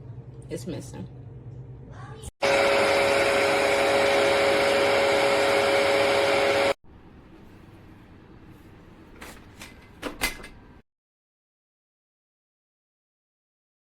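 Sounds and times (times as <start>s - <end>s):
carpet cleaner motor whining: 2.4s - 6.8s.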